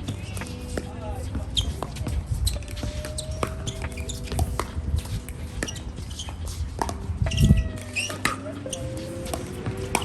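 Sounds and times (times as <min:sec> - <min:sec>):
ball bouncing on court: 0:00.0 - 0:10.0
wind buffeting microphone: 0:00.0 - 0:10.0
paddles striking ball: 0:08.0 - 0:10.0.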